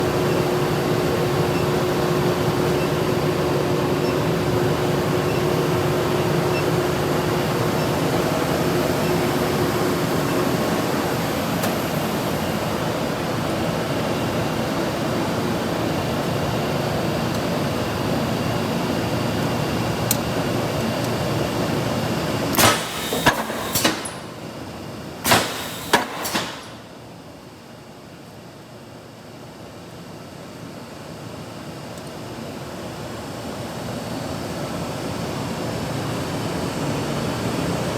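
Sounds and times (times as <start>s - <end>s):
loud shop machinery noise: 0.0s - 27.6s.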